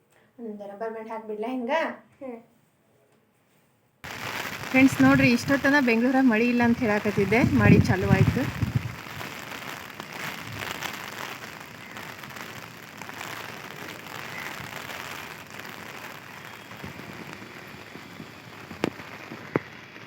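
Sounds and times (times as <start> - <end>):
rain falling: 4.0 - 20.0.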